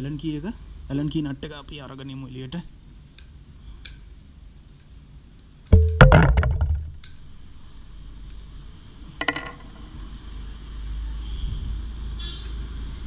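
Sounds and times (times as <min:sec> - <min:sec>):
short metallic clinks: 0:09.2 - 0:10.0.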